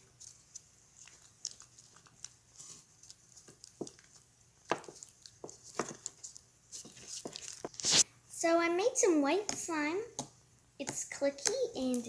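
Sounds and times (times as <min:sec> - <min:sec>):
slime squelching by hand: 0:00.0 - 0:08.1.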